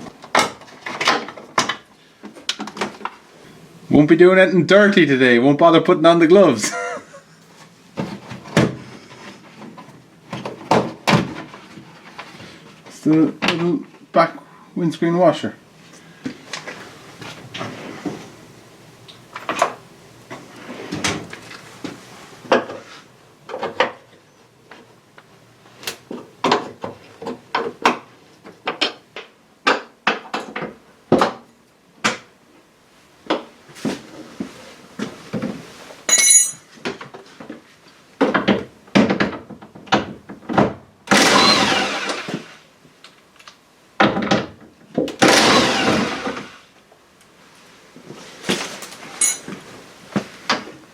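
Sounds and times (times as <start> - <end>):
tools clicking and rattling: 36.1 - 36.7, 49.2 - 49.5.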